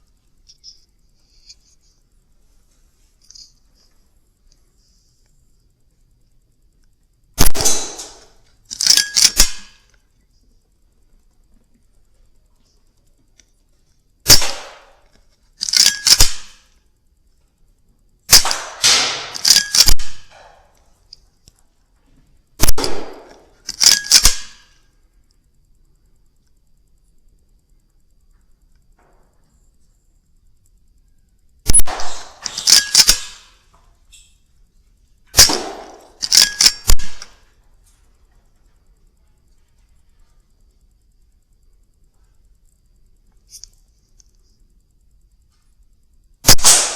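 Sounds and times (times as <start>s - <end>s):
quick metallic clicks: 6.8s - 10.0s, 14.2s - 16.8s, 18.3s - 21.6s, 22.6s - 24.8s, 31.7s - 34.3s, 35.3s - 37.5s
air rifle shot crack: 7.4s - 8.3s, 18.3s - 20.5s, 22.6s - 23.4s, 31.7s - 33.4s, 46.4s - 46.9s
air rifle firing: 7.4s - 9.8s, 14.2s - 15.0s, 15.7s - 16.6s, 18.3s - 20.7s, 22.6s - 24.7s, 31.7s - 33.5s, 35.3s - 37.4s, 46.4s - 46.9s.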